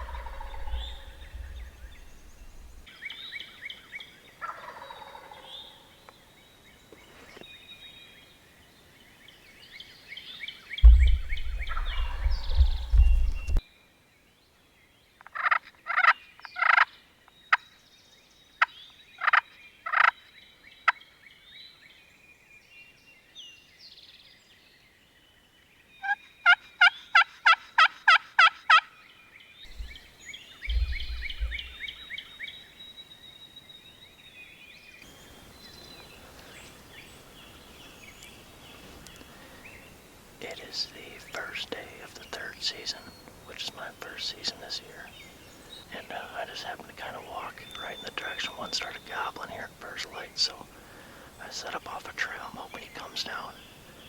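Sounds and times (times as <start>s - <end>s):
turkey yelps: 0.0s - 1.7s
turkey gobbling: 0.0s - 2.8s, 4.4s - 5.5s, 10.8s - 13.6s, 30.7s - 31.9s
low thumps: 0.0s - 2.9s, 10.8s - 13.6s, 29.7s - 30.1s, 30.7s - 32.0s.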